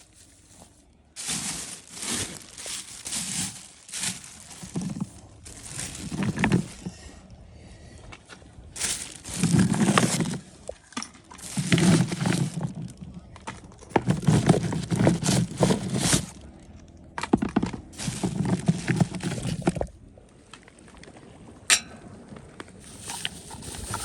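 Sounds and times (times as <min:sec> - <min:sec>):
hard objects clattering: 0:00.0 - 0:07.1, 0:08.8 - 0:16.4, 0:17.1 - 0:19.9, 0:22.8 - 0:24.0.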